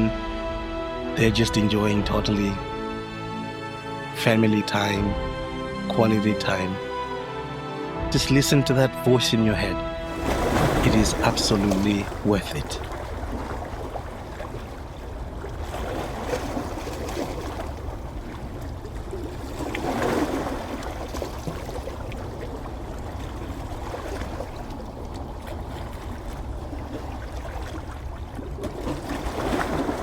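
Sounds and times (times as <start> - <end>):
ocean waves washing onto beach: 9.9 - 30.0.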